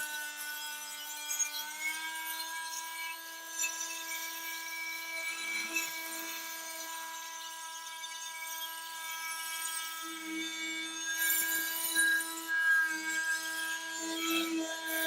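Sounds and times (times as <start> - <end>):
multi-tool motor whine: 0.0 - 15.0.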